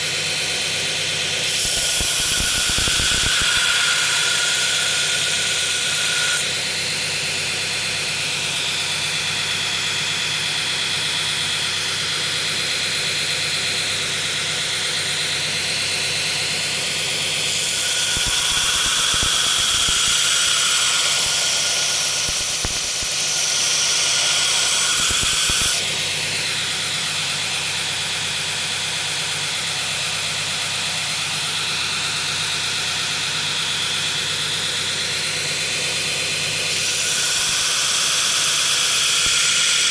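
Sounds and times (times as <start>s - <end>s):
belt grinder running: 0.0s - 39.9s
knife blade grinding on belt: 17.4s - 25.8s.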